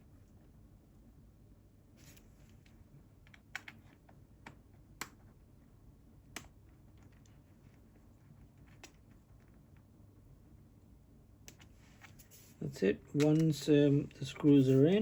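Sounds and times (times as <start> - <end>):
soft rustle: 1.9 - 3.0, 11.5 - 15.0.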